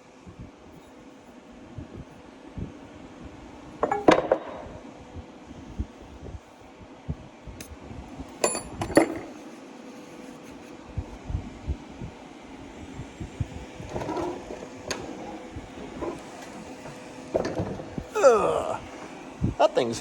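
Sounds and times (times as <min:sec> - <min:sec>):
steady hum: 0:00.0 - 0:20.0
knocks of metal parts: 0:03.8 - 0:04.7
ringing metal clinks: 0:08.4 - 0:09.2.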